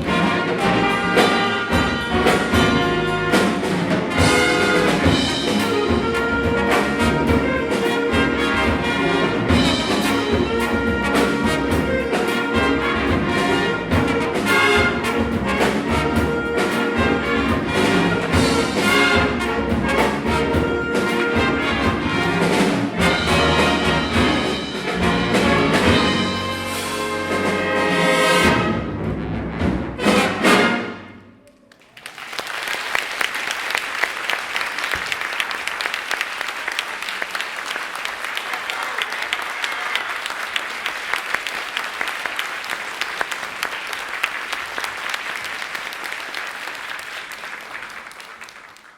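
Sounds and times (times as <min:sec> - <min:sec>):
jazz big band playing: 0:00.0 - 0:31.4
audience applause: 0:31.7 - 0:48.9.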